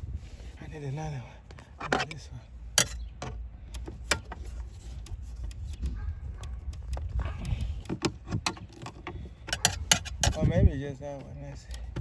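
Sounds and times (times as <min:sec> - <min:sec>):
tools and plastic trim clicking: 0:02.8 - 0:10.5.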